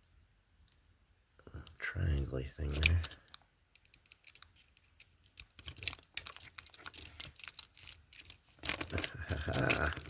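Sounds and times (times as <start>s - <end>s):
handcuffs clicking and rattling: 2.7s - 10.0s.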